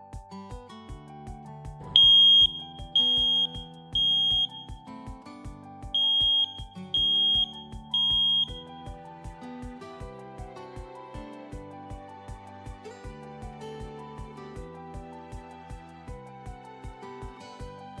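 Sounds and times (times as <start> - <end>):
smoke alarm beeping: 2.0 - 4.7, 6.0 - 8.6.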